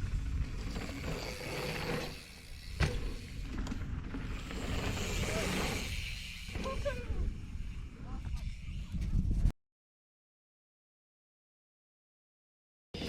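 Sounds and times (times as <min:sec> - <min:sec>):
wind rumble on microphone: 0:00.0 - 0:01.3, 0:02.6 - 0:09.5
bike tyres on dirt: 0:00.0 - 0:09.5.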